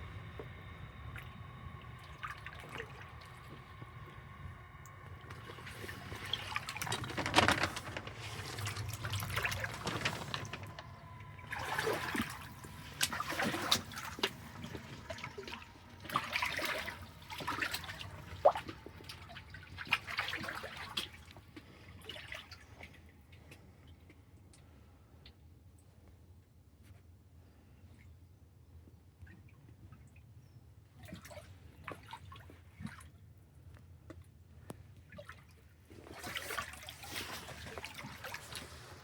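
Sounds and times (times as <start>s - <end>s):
water splashing and pouring: 1.0s - 22.6s, 35.2s - 39.0s.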